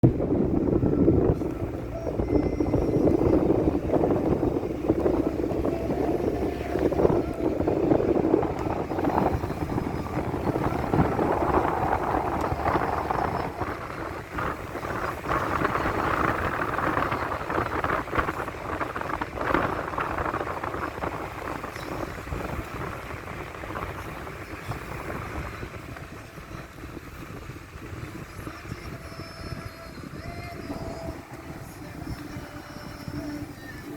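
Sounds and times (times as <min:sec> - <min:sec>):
vehicle rumble on road: 0:00.0 - 0:33.9
wind noise: 0:00.0 - 0:33.9.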